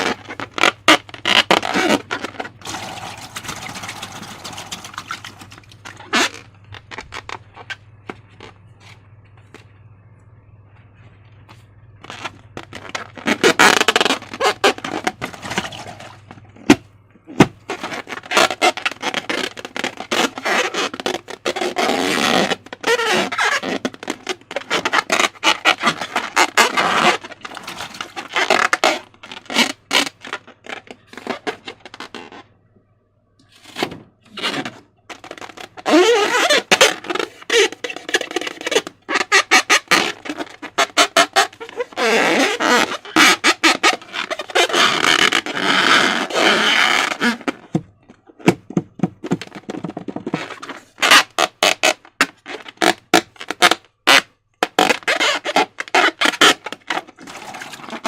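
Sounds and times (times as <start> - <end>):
slime squelching by hand: 1.2 - 6.4, 12.1 - 16.2.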